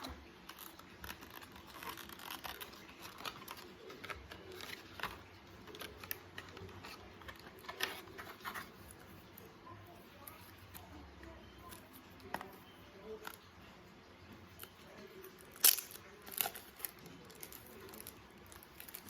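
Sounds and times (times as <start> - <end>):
hands opening packaging: 0.0 - 9.1.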